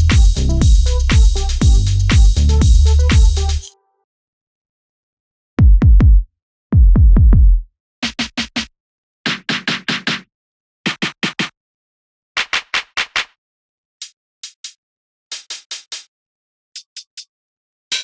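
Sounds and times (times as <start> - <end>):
deep electronic kick drums: 0.0 - 3.6, 5.6 - 7.7
electronic drum beat: 0.0 - 3.6, 5.6 - 6.2, 6.8 - 7.6
snappy snare or clap hits: 0.1 - 0.4, 1.1 - 3.4.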